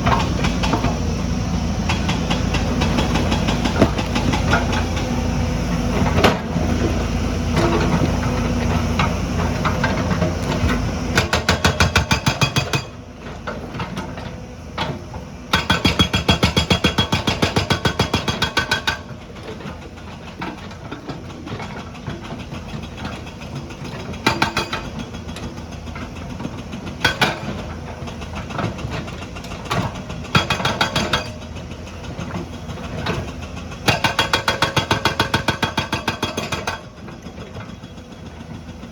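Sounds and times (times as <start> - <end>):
diesel engine running: 0.0 - 11.3
hydraulic breaker hammering: 1.9 - 5.1, 11.2 - 13.0, 29.8 - 31.4, 33.8 - 36.9.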